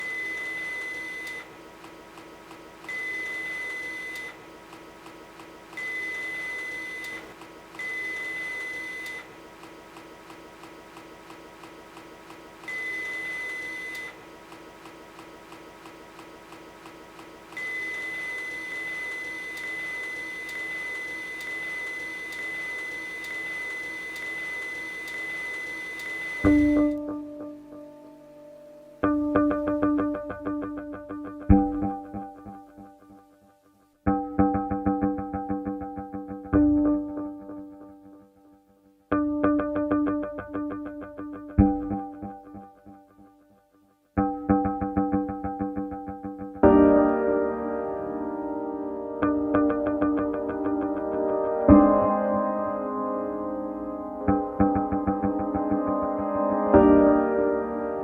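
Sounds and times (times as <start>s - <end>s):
printer motors whining: 15.1s - 26.8s.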